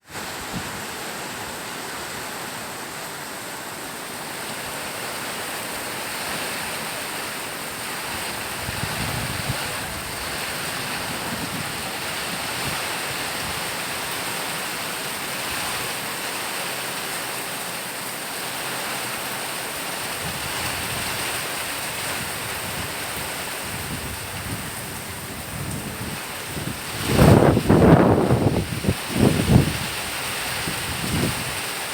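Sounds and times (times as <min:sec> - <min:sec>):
strong wind gusts: 0:00.0 - 0:02.3, 0:04.6 - 0:14.2, 0:20.1 - 0:31.9
heavy rain falling: 0:00.0 - 0:31.9.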